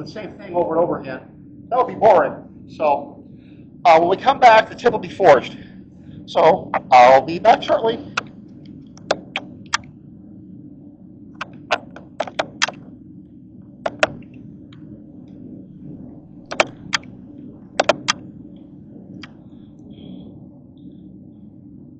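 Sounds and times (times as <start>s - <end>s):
steady low hum: 0.0s - 21.9s
sharp clicks and knocks: 9.0s - 9.9s, 11.4s - 12.9s, 13.8s - 14.4s, 16.5s - 17.1s, 17.8s - 18.2s.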